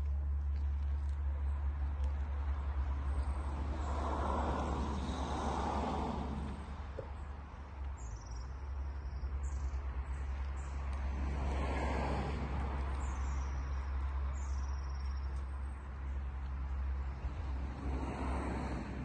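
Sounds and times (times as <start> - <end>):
bird chirping: 6.5 - 10.8, 12.9 - 16.2.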